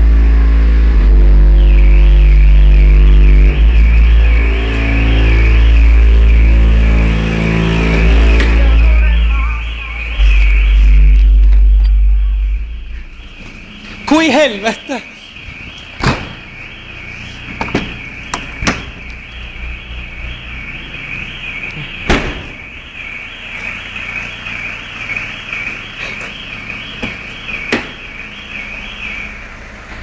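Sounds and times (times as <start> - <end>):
car alarm siren wailing: 0.0 - 30.0
sharp knocks: 16.0 - 16.4, 17.6 - 19.0, 22.1 - 22.6, 27.0 - 28.0.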